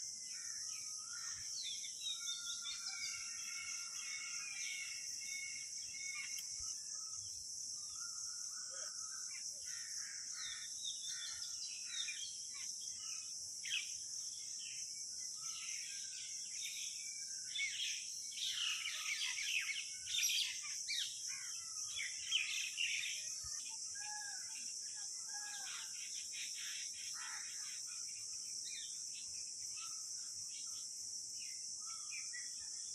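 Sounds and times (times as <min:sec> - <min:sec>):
high-pitched insect chorus: 0:00.0 - 0:32.9
small birds chirping: 0:04.6 - 0:09.9.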